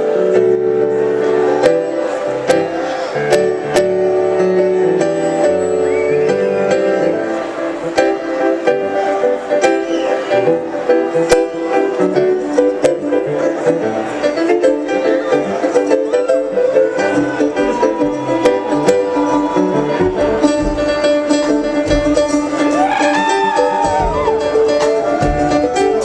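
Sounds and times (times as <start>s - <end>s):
bluegrass banjo picking: 7.4s - 26.0s
plucked strings: 7.6s - 26.0s.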